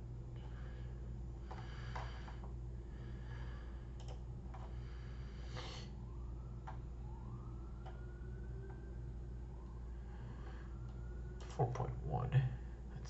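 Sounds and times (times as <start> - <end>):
low electrical hum: 0.0 - 13.0
computer mouse clicks: 4.0 - 4.7, 10.9 - 11.8.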